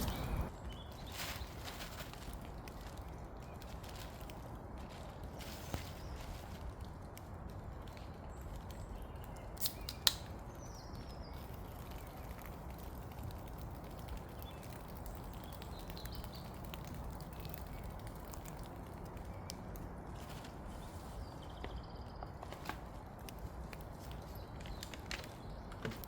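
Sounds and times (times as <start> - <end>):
steady low rumble: 0.0 - 0.6
faint bird chirp: 0.0 - 1.8.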